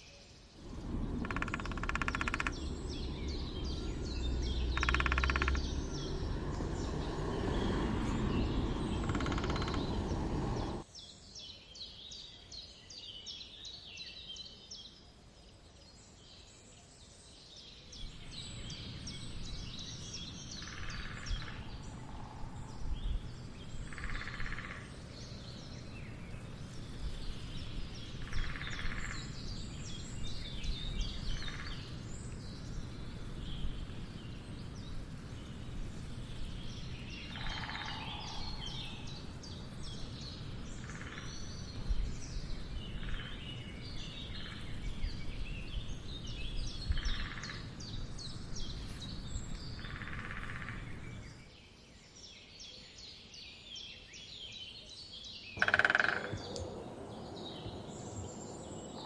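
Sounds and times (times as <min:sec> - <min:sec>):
small birds chirping: 0:00.0 - 0:59.0
steady low rumble: 0:00.6 - 0:10.8, 0:18.0 - 0:50.0, 0:56.2 - 0:59.0
woodpecker drumming: 0:00.7 - 0:06.3, 0:08.7 - 0:10.8, 0:23.9 - 0:24.9, 0:55.6 - 0:58.4.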